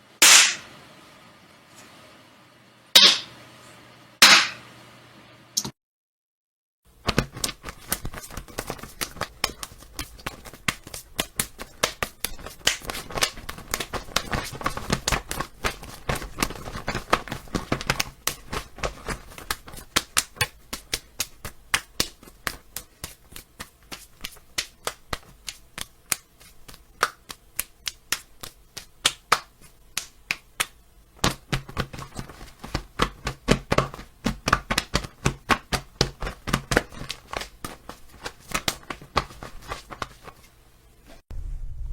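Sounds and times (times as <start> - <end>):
sharp hand slaps: 0.2 - 0.7, 3.0 - 3.3, 4.2 - 4.6, 12.6 - 13.9, 23.6 - 31.6.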